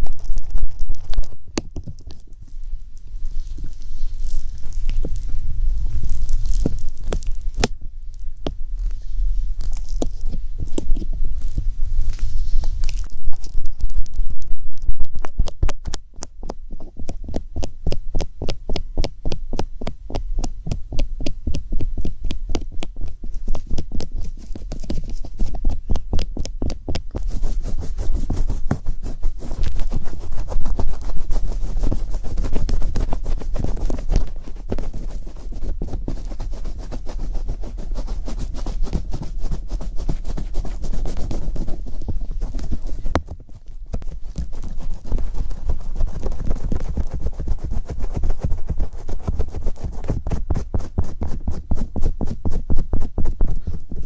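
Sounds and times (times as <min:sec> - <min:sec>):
rapid tapping: 0:15.4 - 0:54.0.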